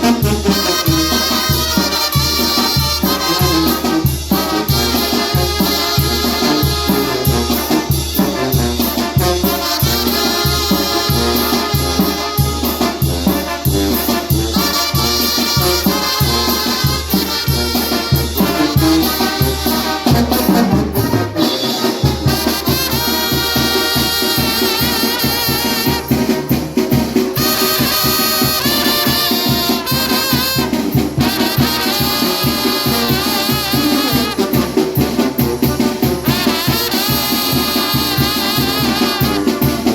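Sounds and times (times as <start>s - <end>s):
trumpet: 0.0s - 39.9s.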